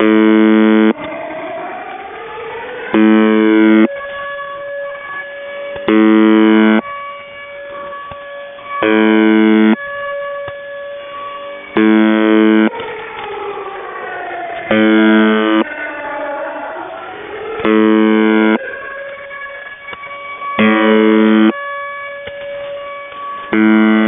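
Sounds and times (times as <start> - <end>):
harsh radio buzzes: 0.0 - 1.0, 3.0 - 3.9, 5.9 - 6.8, 8.8 - 9.8, 11.8 - 12.7, 14.7 - 15.7, 17.6 - 18.7, 20.6 - 21.6, 23.6 - 24.0
air-raid siren: 0.0 - 24.0.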